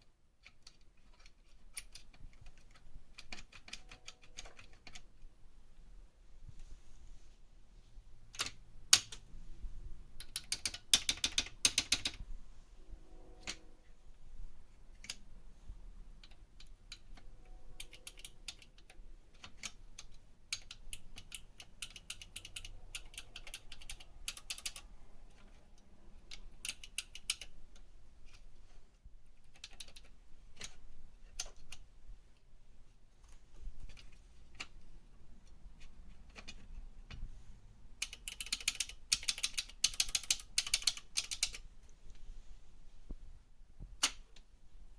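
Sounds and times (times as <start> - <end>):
keyboard keys clicking: 0.4 - 5.1, 10.2 - 12.2, 16.2 - 25.6, 29.5 - 31.8, 38.0 - 41.6.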